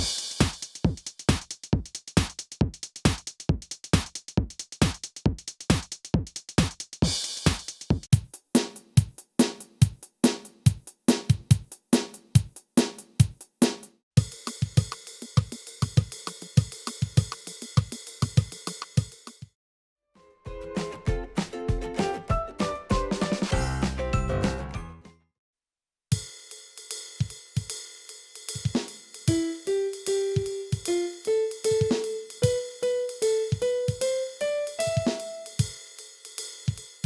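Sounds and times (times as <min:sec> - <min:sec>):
electronic drum beat: 0:00.0 - 0:19.4, 0:20.8 - 0:24.7, 0:28.5 - 0:36.0
held keyboard chord: 0:29.3 - 0:35.7.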